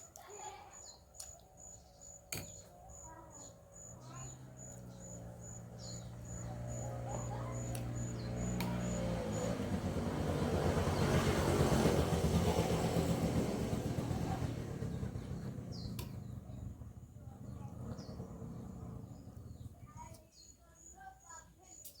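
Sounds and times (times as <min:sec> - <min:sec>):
cricket chirping: 0:00.8 - 0:10.8
motor vehicle passing by: 0:02.1 - 0:20.1.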